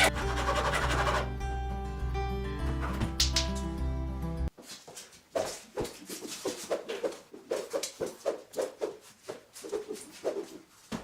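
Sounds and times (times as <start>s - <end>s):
hand saw cutting wood: 0.0s - 1.3s.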